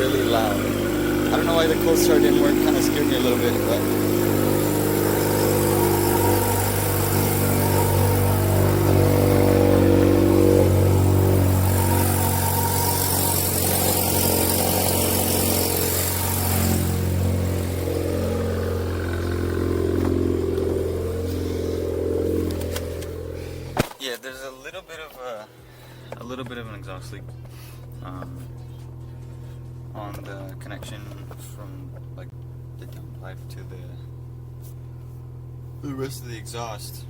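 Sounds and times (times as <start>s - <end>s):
car engine idling loudly: 0.0s - 23.8s, 25.6s - 37.0s.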